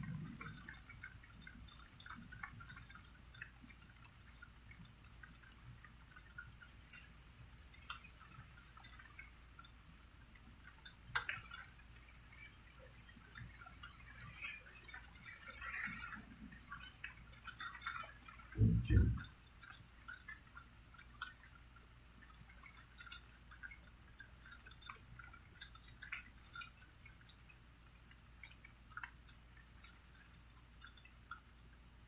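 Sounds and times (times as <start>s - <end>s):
raindrops ticking: 0.0s - 32.0s
steady low hum: 0.0s - 32.0s
low thump: 18.6s - 19.2s.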